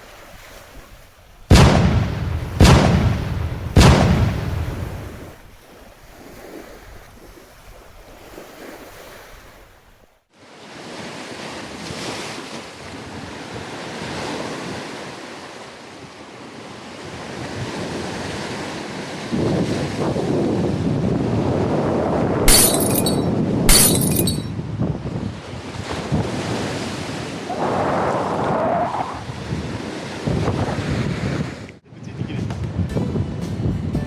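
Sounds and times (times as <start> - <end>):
wind buffeting microphone: 19.2 - 34.0.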